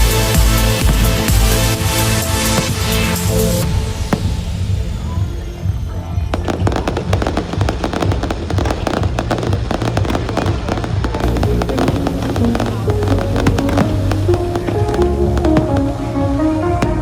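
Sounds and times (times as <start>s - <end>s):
phonk music with strong bass: 0.0s - 4.9s
fireworks crackling: 0.0s - 5.0s, 6.3s - 17.0s.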